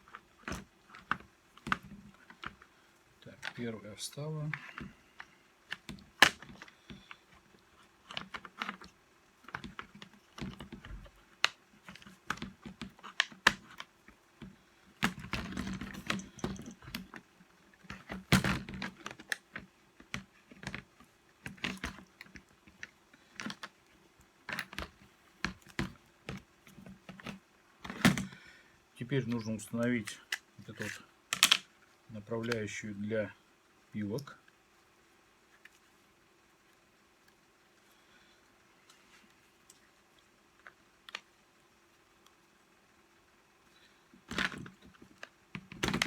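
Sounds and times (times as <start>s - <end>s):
clicks and knocks of parts: 0.0s - 28.5s, 29.2s - 31.8s, 44.2s - 46.0s.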